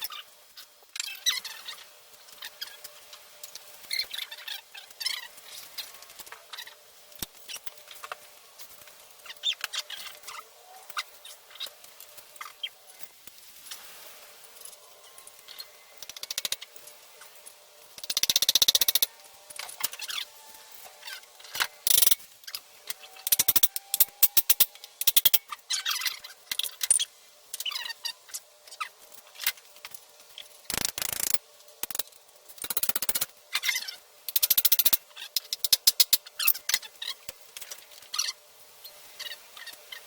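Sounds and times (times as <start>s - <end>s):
sharp clicks and clinks: 23.2s - 25.4s, 30.7s - 32.0s, 32.6s - 33.3s, 34.3s - 36.2s
fast rattling: 30.7s - 32.0s, 32.6s - 33.3s.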